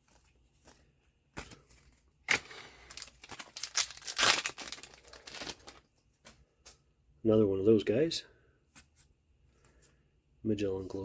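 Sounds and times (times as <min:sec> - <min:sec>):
wrapper crinkling and tearing: 0:02.2 - 0:05.9.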